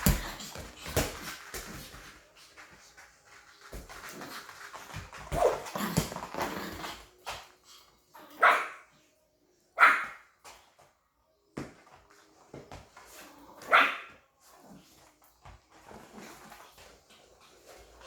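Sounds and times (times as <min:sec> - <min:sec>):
dog barking: 0:08.4 - 0:08.8, 0:09.8 - 0:10.2, 0:13.6 - 0:14.1.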